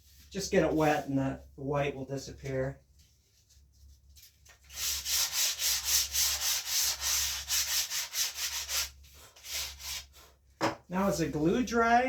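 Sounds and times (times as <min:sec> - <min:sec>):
sandpaper rubbing on wood: 0:04.7 - 0:10.2.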